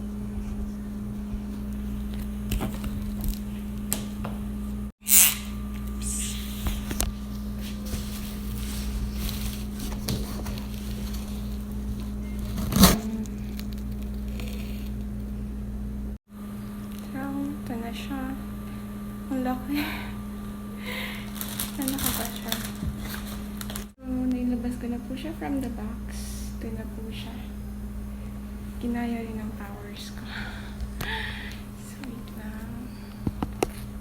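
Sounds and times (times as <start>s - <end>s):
low hum: 0.0s - 34.0s
packaging crackling and rustling: 7.7s - 15.0s, 21.3s - 23.9s.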